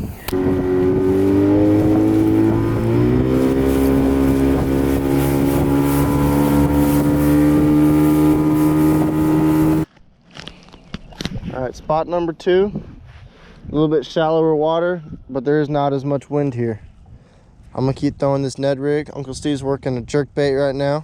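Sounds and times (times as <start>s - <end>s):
outboard motor running: 0.0s - 9.9s.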